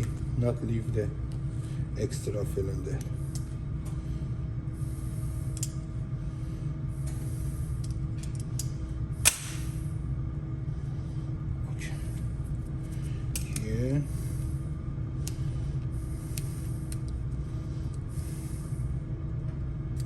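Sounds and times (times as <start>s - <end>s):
steady low hum: 0.0s - 20.0s
sharp click: 8.6s - 9.7s.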